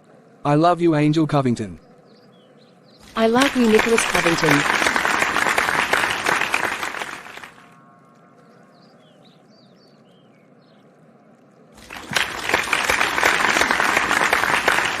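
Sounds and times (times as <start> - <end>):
crowd applauding: 3.1 - 7.8, 11.8 - 15.0.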